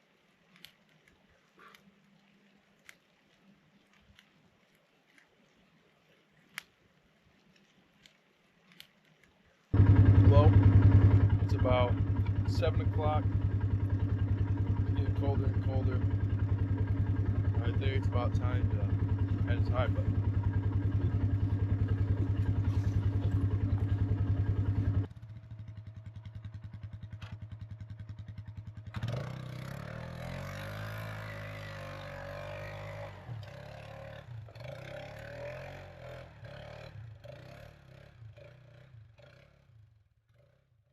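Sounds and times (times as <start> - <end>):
atv engine idling: 9.7 - 40.9
atv revving and driving off: 9.8 - 40.8.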